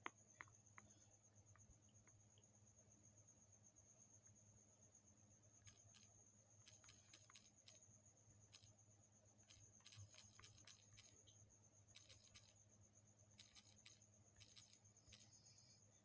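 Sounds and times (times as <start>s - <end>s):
faint steady hum: 0.0s - 16.0s
faint clicks: 5.6s - 7.8s, 9.4s - 12.6s, 13.4s - 15.5s.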